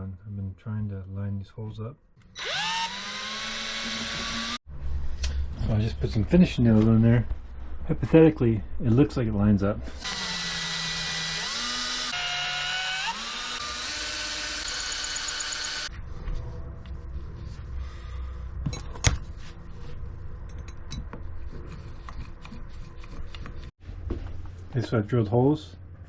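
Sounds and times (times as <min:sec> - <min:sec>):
electric drill whine: 0:02.4 - 0:04.6, 0:10.0 - 0:15.9.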